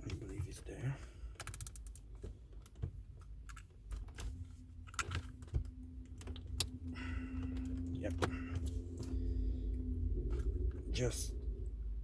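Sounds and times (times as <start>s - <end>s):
faint steady hum: 3.2s - 12.0s.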